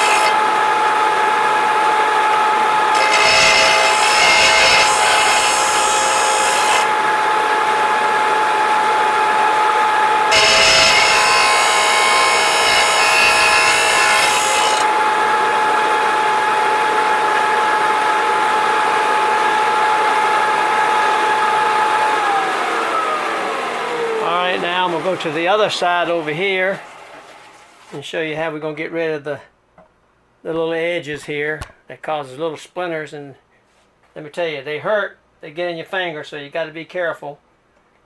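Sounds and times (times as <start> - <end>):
electric grinder whining: 0.0 - 27.7
grinding rasp on steel: 2.9 - 6.9, 10.3 - 14.9.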